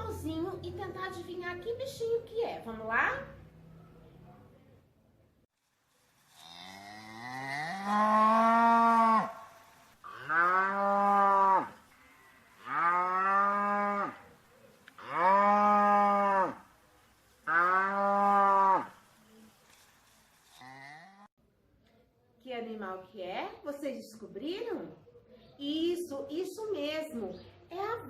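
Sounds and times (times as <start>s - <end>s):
cow mooing: 6.4s - 11.8s, 12.6s - 14.3s, 15.0s - 16.6s, 17.5s - 19.0s.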